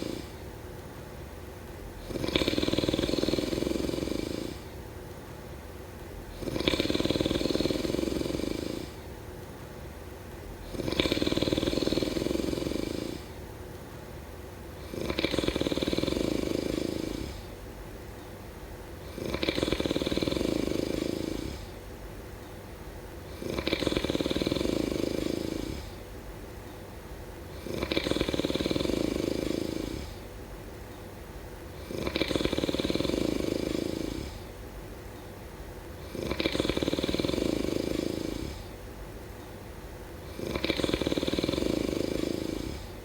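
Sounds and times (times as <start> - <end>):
person snoring: 0.0 - 0.4, 2.0 - 4.8, 6.3 - 9.1, 10.6 - 13.4, 14.8 - 17.6, 19.0 - 21.8, 23.2 - 26.0, 27.5 - 30.3, 31.7 - 34.5, 36.0 - 38.8, 40.2 - 43.0.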